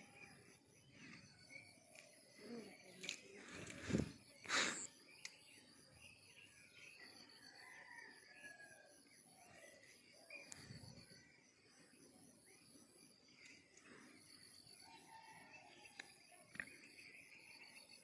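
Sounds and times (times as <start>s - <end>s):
insects trilling: 0.0s - 18.0s.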